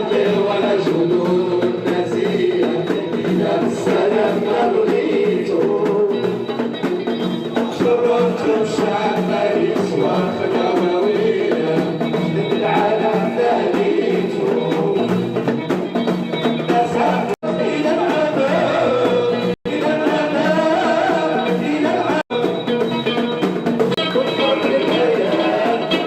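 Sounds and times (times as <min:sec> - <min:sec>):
live folk music with singing: 0:00.0 - 0:26.0.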